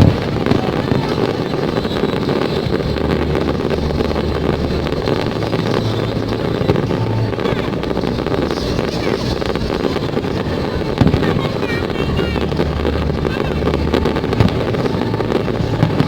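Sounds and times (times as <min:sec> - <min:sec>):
fireworks barrage rumbling with crackle: 0:00.0 - 0:16.0
sharp firework bang: 0:00.0 - 0:16.0.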